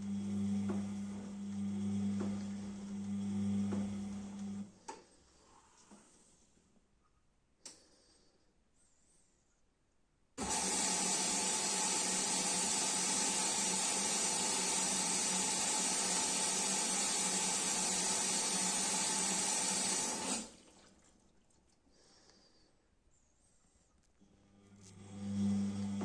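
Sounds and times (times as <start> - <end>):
water rushing into washing machine: 10.4 - 21.4.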